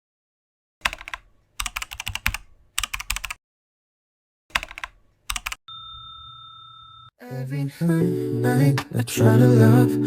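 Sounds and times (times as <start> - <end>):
keyboard key clicks: 0.8 - 3.4, 4.5 - 5.6.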